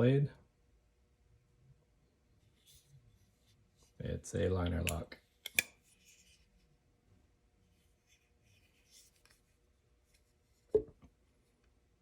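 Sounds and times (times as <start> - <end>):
rubbing and handling of a knife: 2.3 - 6.9, 7.6 - 11.7.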